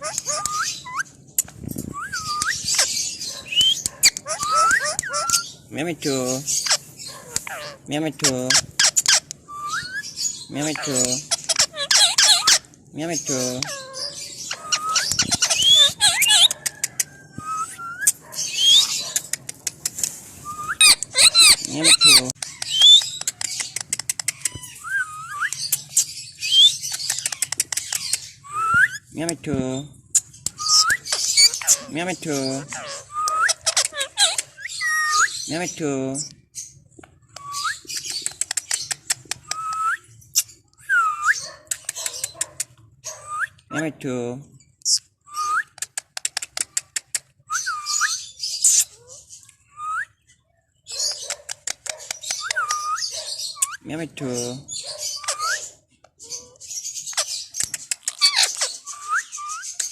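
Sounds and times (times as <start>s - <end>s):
parakeet whistling: 0.0s - 1.1s, 1.9s - 5.5s, 8.5s - 10.4s, 13.6s - 16.5s, 30.6s - 31.9s
parakeet squawking: 0.0s - 1.6s, 2.2s - 16.7s, 18.0s - 19.4s, 20.8s - 28.8s, 30.2s - 35.6s, 50.9s - 59.9s
parakeet whistling and chattering: 0.0s - 29.1s, 30.1s - 43.8s, 44.8s - 59.9s
parakeet clicks: 19.0s - 20.1s, 22.4s - 24.7s, 26.9s - 28.3s, 37.3s - 40.5s, 41.6s - 42.8s, 45.8s - 47.3s, 51.3s - 52.9s, 57.2s - 58.7s.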